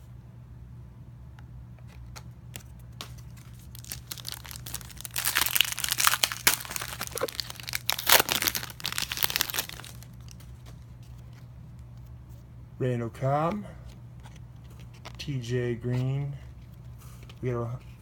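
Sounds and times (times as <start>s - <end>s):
foil wrapper crinkling and tearing: 2.6s - 10.8s.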